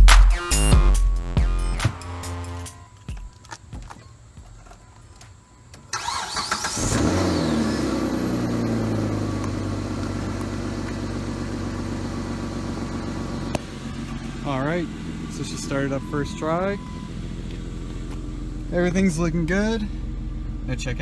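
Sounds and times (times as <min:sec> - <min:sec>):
starter cranking engine: 0:05.8 - 0:21.0
car engine revving and idling: 0:06.0 - 0:21.0.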